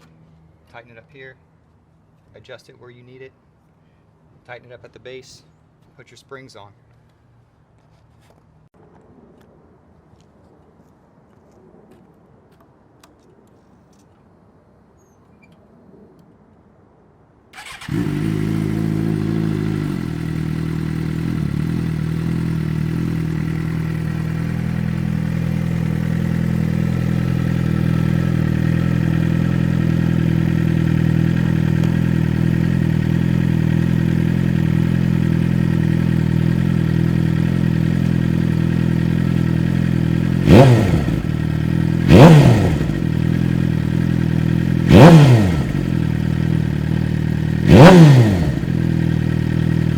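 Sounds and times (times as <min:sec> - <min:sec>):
engine revving: 0:17.6 - 0:49.9
motorcycle engine idling: 0:17.6 - 0:49.9.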